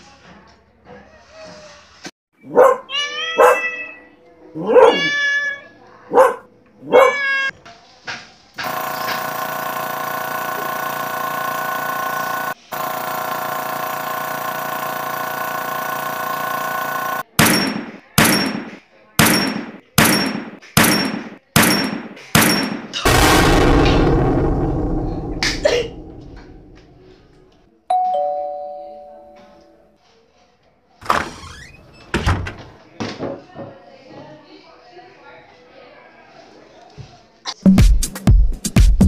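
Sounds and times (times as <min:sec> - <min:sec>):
meow-like call: 0:02.9 - 0:04.2, 0:04.8 - 0:05.7, 0:06.9 - 0:07.6
sharp ringing bangs: 0:17.3 - 0:27.2
loud rushing noise: 0:23.1 - 0:27.1.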